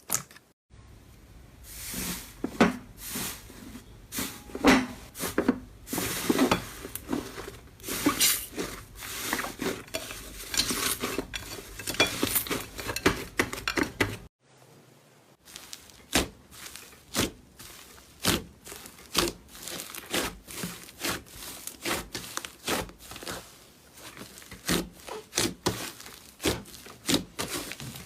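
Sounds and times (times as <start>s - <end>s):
hands squishing slime: 15.4s - 28.0s.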